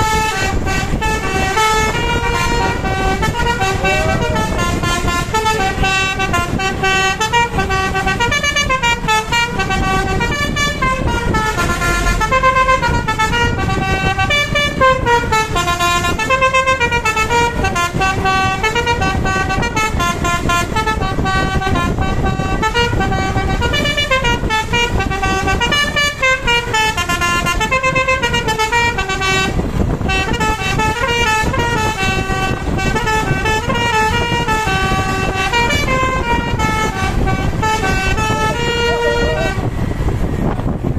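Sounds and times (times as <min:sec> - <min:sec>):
bus engine rumble: 0:00.0 - 0:40.9
multi-tone bus horn melody: 0:00.0 - 0:40.9.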